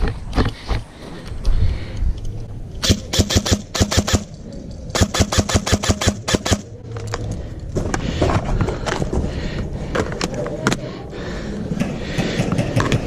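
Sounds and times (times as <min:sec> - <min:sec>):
airsoft rifle shots: 0:02.8 - 0:06.7.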